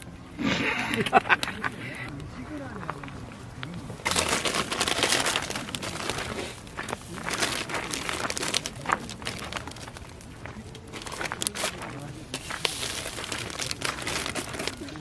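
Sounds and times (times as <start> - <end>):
plastic wrapper crinkling: 3.6 - 15.0.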